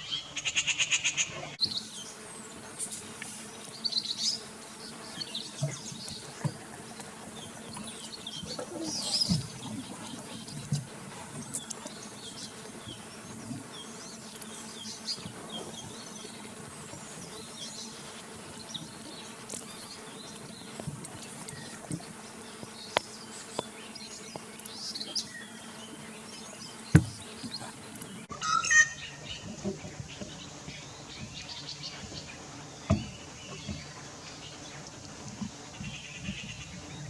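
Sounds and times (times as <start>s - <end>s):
insects buzzing: 0.0s - 37.0s
loud thump: 26.9s - 27.3s.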